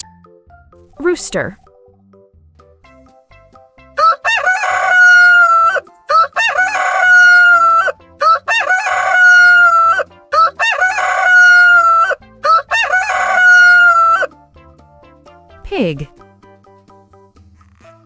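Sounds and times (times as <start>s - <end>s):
rooster crowing: 4.0s - 14.3s.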